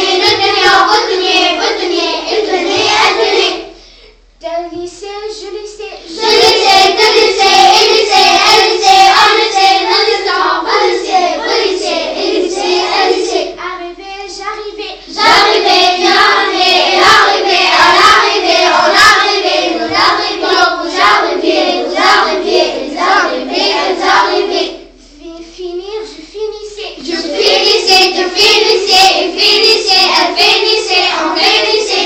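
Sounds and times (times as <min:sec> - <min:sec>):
children singing a chant: 0:00.0 - 0:03.8, 0:05.9 - 0:25.0, 0:26.0 - 0:32.0.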